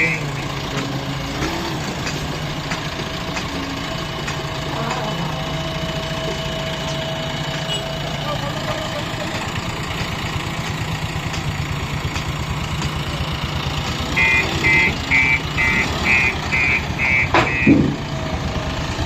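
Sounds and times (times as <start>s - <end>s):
diesel engine idling: 0.0s - 19.0s.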